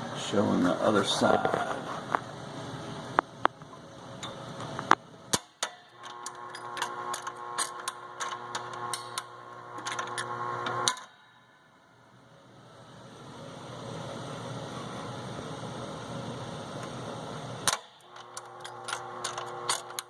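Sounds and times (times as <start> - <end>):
jukebox motor humming: 0.4 - 11.2, 13.6 - 20.0
jukebox mechanism sharp clicks: 4.6 - 11.2, 17.6 - 20.0.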